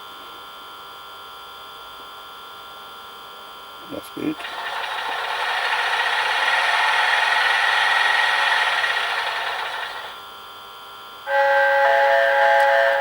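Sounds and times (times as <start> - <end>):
locomotive rasping hiss: 4.4 - 10.2.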